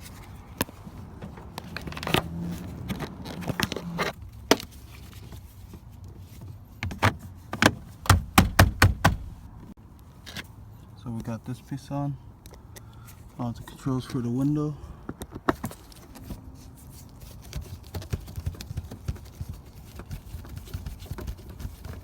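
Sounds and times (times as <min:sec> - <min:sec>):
plastic parts scraping and rustling: 0:00.0 - 0:09.4, 0:15.5 - 0:22.0
plastic panel clicks and knocks: 0:06.8 - 0:09.4.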